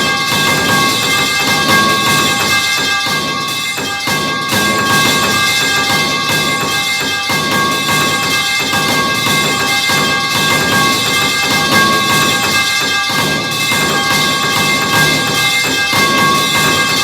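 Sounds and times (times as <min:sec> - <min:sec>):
metal pipe clanging: 0:00.0 - 0:17.0.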